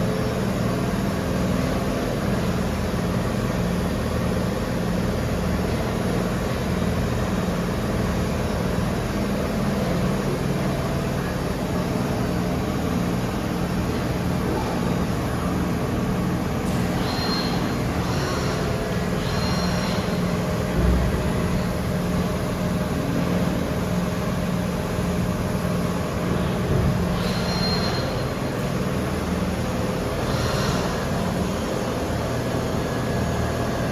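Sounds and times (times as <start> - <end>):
machine steady mechanical hum: 0.0 - 33.9
high-pitched squeals: 16.7 - 21.9.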